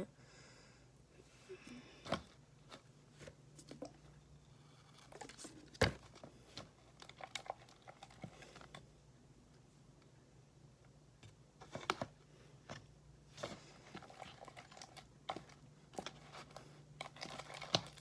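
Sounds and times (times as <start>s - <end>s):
sticky slime being stirred: 6.4s - 8.8s, 13.4s - 18.0s.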